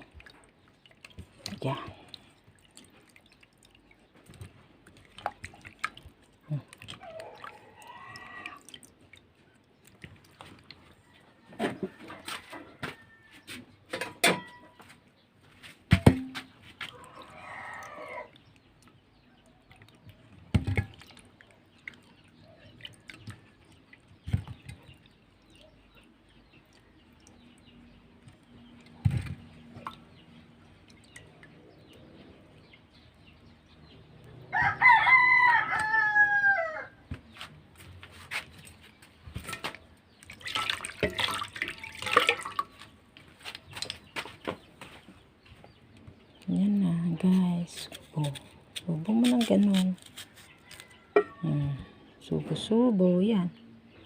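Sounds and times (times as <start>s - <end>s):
rooster crowing: 34.5s - 37.0s.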